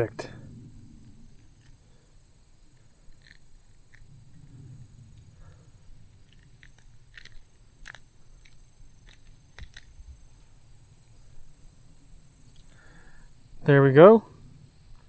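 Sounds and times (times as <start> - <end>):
low wind rumble: 0.0 - 15.0
fishing reel clicks: 6.3 - 9.9.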